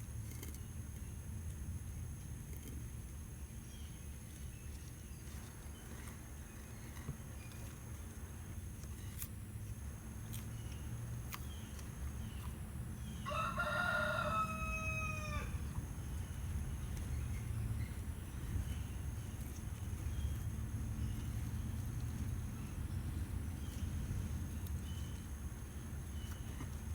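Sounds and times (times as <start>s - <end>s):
rooster crowing: 13.2s - 15.7s.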